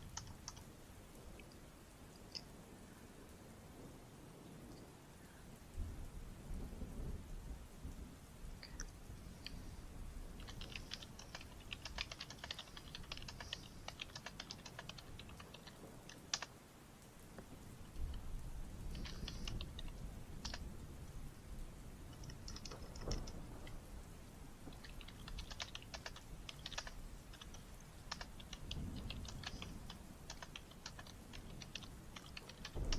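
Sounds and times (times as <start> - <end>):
typing on computer keyboard: 0.0 - 0.7, 10.4 - 16.5, 18.9 - 20.7, 22.1 - 23.4, 24.7 - 32.9
low steady rumble: 5.2 - 32.9.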